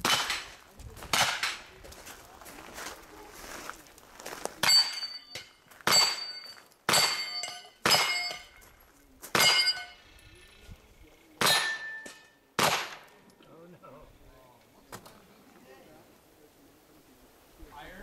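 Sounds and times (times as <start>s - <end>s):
gunshots: 0.0s - 1.6s, 12.6s - 13.1s
steel target ringing: 4.6s - 8.6s, 9.4s - 10.0s, 11.4s - 12.4s.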